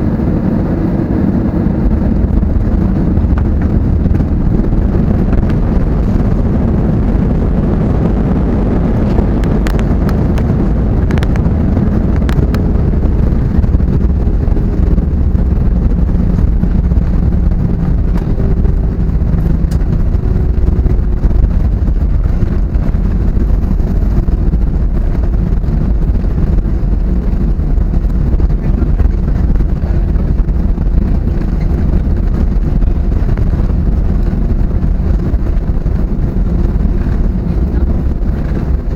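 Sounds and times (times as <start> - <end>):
aircraft cabin engine rumble: 0.0 - 38.9.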